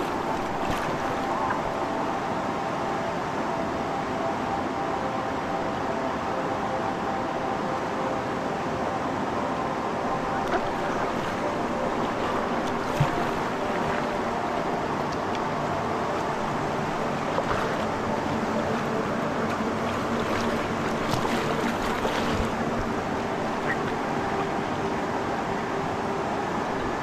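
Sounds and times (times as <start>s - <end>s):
river water rushing: 0.0s - 27.0s
light splashes and knocks: 12.2s - 14.0s.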